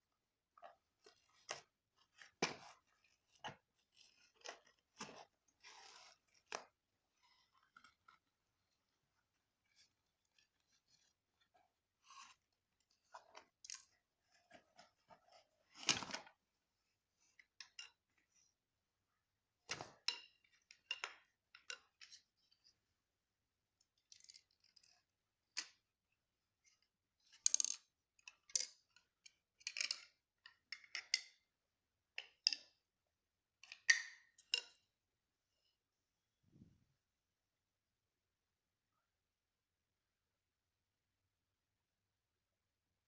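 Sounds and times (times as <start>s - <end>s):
wooden spoons clicking and knocking: 27.5s - 28.8s, 29.6s - 31.4s.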